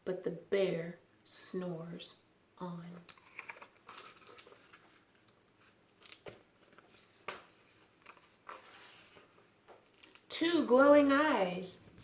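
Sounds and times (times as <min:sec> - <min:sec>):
paper rustling: 0:03.1 - 0:11.4.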